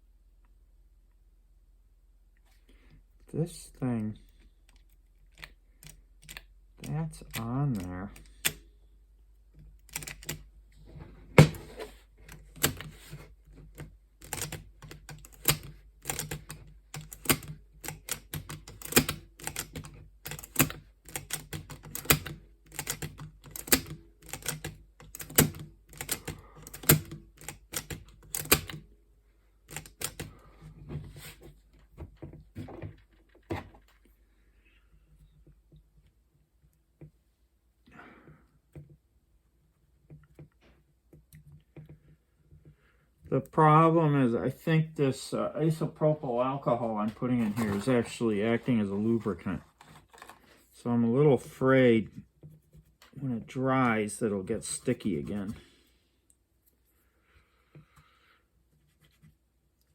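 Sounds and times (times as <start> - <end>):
small metal parts clicking: 14.2 - 28.8.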